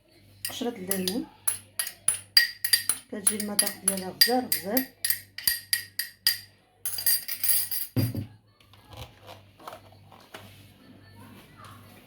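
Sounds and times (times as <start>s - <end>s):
utensil clinking against mixing bowl: 0.4s - 8.2s.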